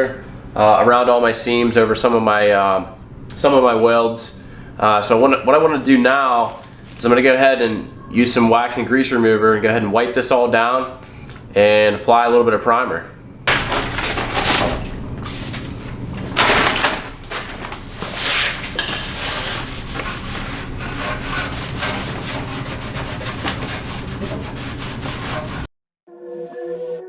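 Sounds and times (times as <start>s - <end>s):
music: 26.1s - 27.0s.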